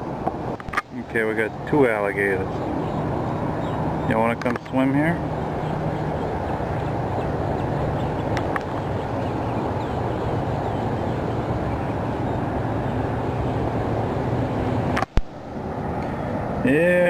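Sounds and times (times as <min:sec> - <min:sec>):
low hum: 0:00.0 - 0:17.0
sharp click: 0:00.6 - 0:00.9, 0:04.4 - 0:04.8, 0:14.9 - 0:15.3.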